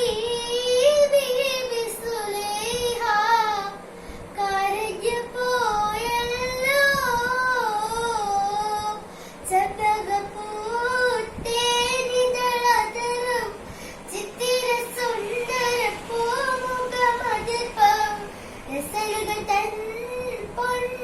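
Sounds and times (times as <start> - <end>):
child singing: 4.4 - 21.0.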